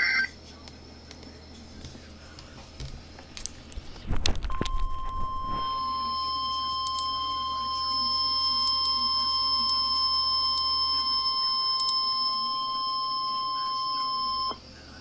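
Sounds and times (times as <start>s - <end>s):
faint radio hiss: 0.0s - 15.0s
steady warning alarm tone: 4.5s - 14.6s.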